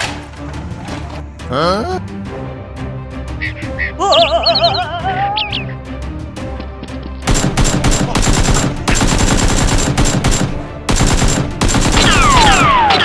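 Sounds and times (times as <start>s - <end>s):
rapid automatic gunfire: 7.3s - 12.8s.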